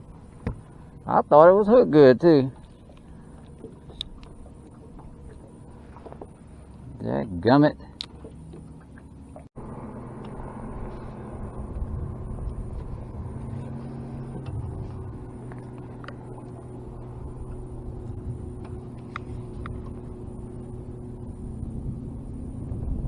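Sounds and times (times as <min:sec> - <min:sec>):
faint ticks: 0:02.6 - 0:04.4, 0:15.4 - 0:16.6
electric trolling motor humming: 0:07.8 - 0:23.0
microphone rumble: 0:09.6 - 0:23.0.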